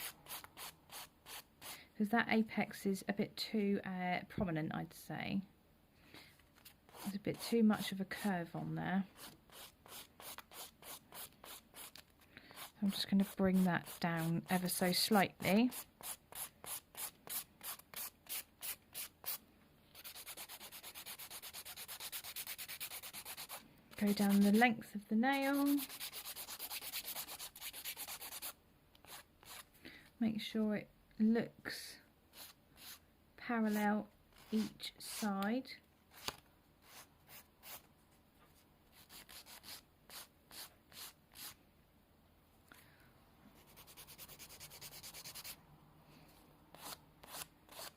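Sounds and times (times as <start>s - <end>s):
nail file rasping: 9.2s - 14.3s, 25.6s - 29.7s, 46.7s - 47.9s.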